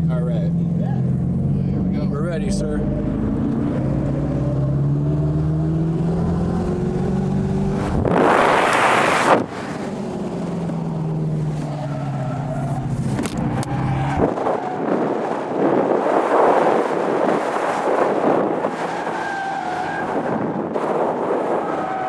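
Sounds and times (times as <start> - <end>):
electric car accelerating hum: 1.1 - 17.2
tyres squealing and skidding: 11.1 - 16.7, 18.4 - 22.0.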